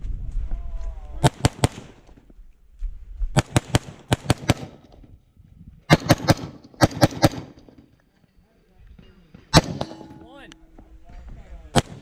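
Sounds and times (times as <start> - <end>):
rifle gunshots: 3.4 - 4.8, 5.9 - 7.8, 9.5 - 10.2, 11.7 - 12.0.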